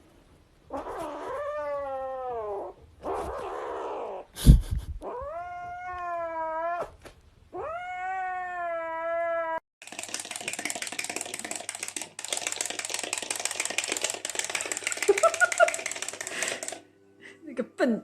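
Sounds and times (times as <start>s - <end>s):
cat meowing: 5.0s - 9.6s
breathy noise: 16.1s - 17.4s.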